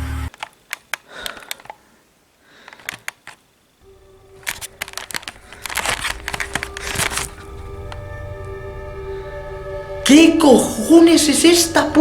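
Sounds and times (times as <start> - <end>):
handling clicks and knocks: 0.3 - 1.8, 2.6 - 8.2
rustling: 0.3 - 9.2
low music drone: 3.8 - 12.0.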